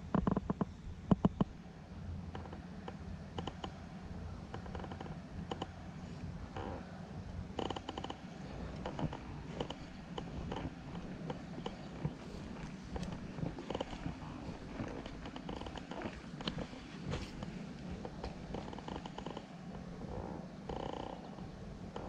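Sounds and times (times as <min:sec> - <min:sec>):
low background rumble: 0:00.0 - 0:22.0
light clicks and ticks: 0:07.6 - 0:19.5.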